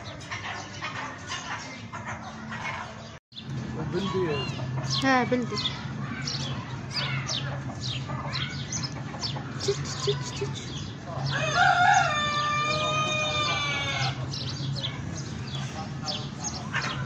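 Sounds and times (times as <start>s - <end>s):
small birds chirping: 0.0s - 17.0s
rooster crowing: 11.3s - 14.2s.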